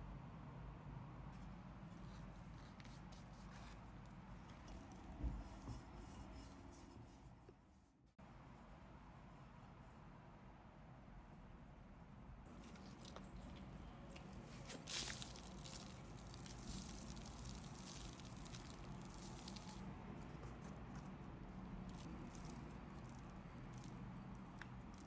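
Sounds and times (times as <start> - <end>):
potting soil rustling: 12.5 - 25.0.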